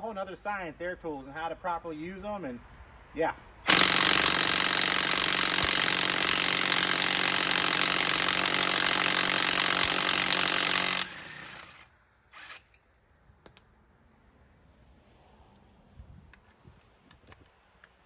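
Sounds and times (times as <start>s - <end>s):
air impact wrench hammering: 3.7s - 12.6s.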